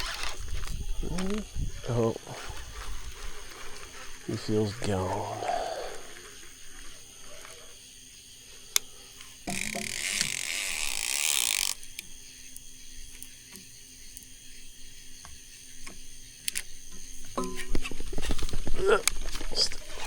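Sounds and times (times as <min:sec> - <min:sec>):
fishing reel ticks: 0:08.7 - 0:15.0, 0:15.8 - 0:16.8
fishing reel ratchet buzzing: 0:08.8 - 0:15.0.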